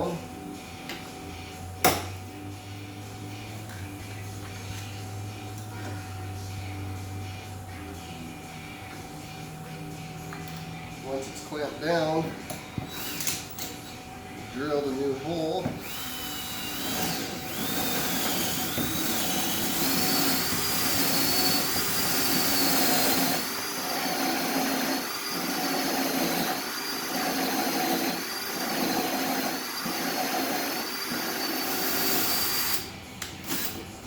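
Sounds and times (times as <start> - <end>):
electric drill whining: 12.9 - 14.0, 15.8 - 33.8.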